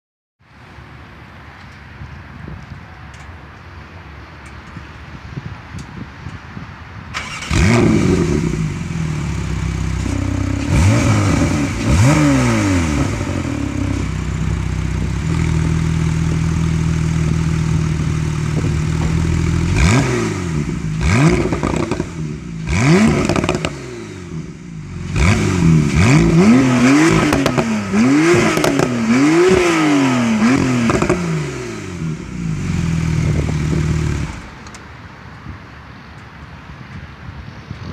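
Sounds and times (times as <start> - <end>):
car engine starting and revving: 7.2 - 34.6.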